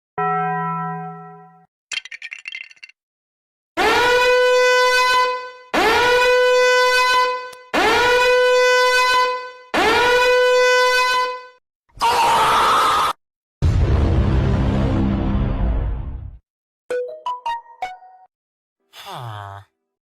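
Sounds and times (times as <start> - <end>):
long horn blasts: 3.8 - 11.6.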